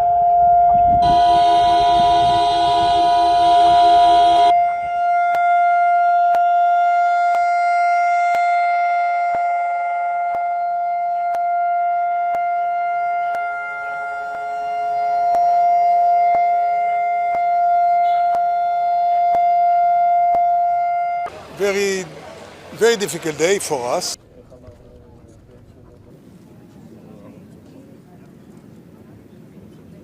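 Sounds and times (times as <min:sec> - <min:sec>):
siren steady tone: 0:00.0 - 0:21.8.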